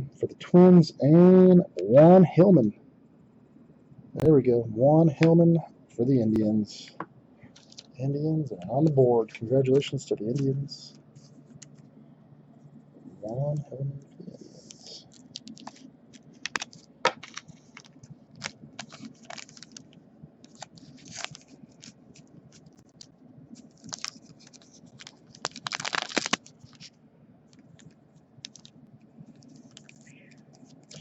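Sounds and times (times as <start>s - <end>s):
crinkling: 6.3s - 11.9s, 14.2s - 31.0s
cards clicking and sliding: 14.6s - 19.9s.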